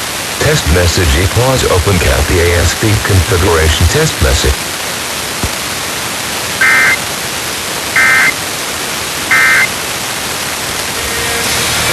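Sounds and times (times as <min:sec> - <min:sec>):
static hiss: 0:00.0 - 0:11.9
digital data tone bursts: 0:06.6 - 0:07.0, 0:08.0 - 0:08.4, 0:09.3 - 0:09.7.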